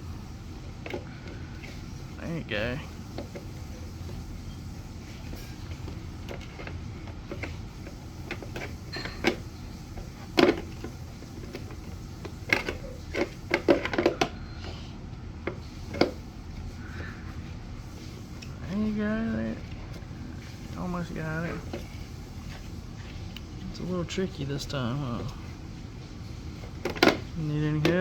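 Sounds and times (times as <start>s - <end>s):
vacuum cleaner parts clicking: 26.6s - 28.0s.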